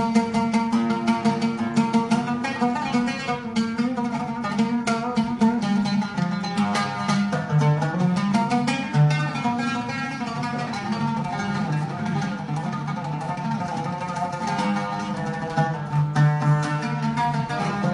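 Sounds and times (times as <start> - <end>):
plucked string instrument: 0.0 - 17.9.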